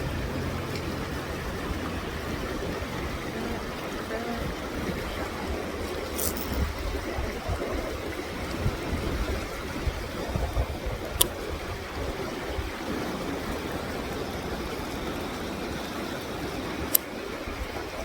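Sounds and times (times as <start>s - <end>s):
low rumble: 0.0s - 12.4s
river water rushing: 0.0s - 18.0s.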